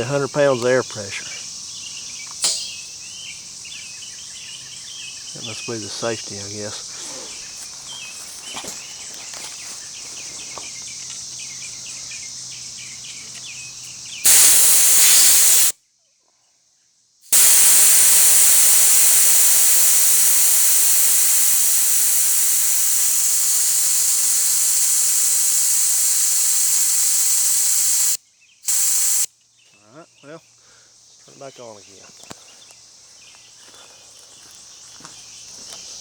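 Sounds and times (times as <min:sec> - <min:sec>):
insects chirping: 0:00.0 - 0:15.7, 0:16.7 - 0:36.0
compressed air hissing: 0:02.4 - 0:02.9, 0:06.8 - 0:07.6, 0:14.2 - 0:15.7, 0:17.2 - 0:29.3.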